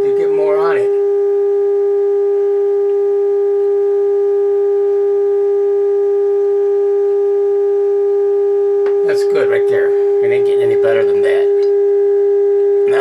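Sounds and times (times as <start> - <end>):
radio speaker test tone: 0.0 - 13.0.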